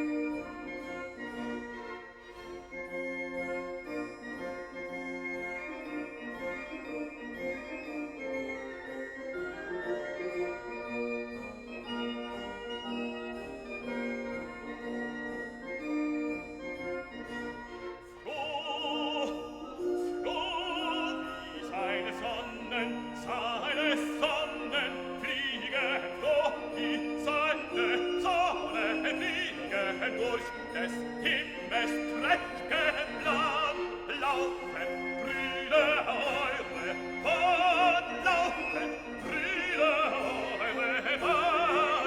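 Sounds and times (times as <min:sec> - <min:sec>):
operatic singing voice: 0:18.2 - 0:42.0.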